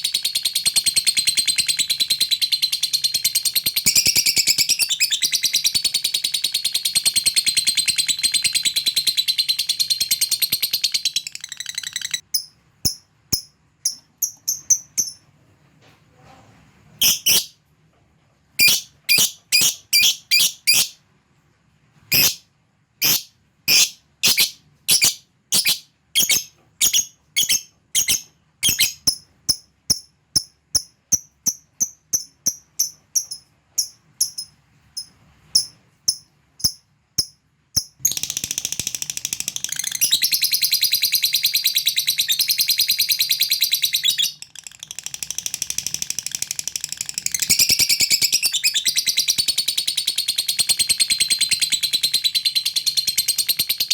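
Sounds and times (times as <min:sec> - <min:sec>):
lovebird chattering trill: 0:00.0 - 0:15.2, 0:17.0 - 0:17.5, 0:18.6 - 0:21.0, 0:22.1 - 0:22.4, 0:23.0 - 0:46.0
short sharp high chirps: 0:17.0 - 0:17.6.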